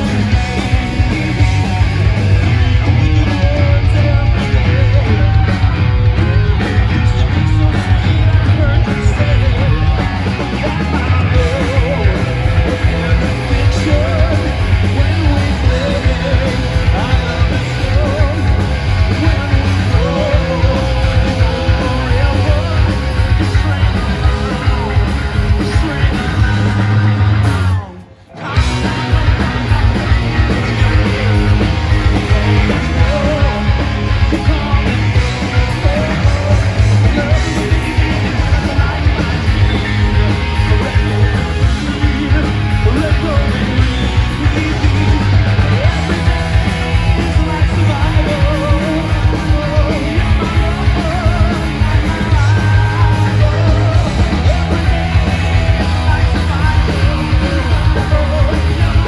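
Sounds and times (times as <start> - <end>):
punk rock music with singing: 0.0 - 59.0.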